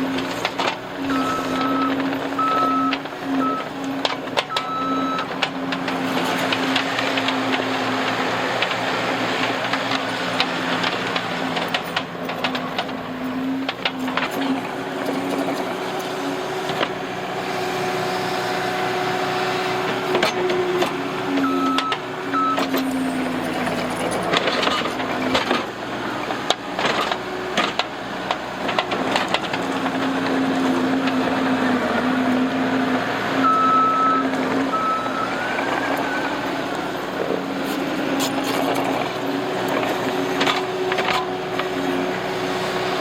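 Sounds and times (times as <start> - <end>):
diesel engine under load: 0.0 - 43.0
reversing alarm beeping: 1.0 - 3.8, 4.5 - 5.4, 21.4 - 22.8, 33.4 - 36.5.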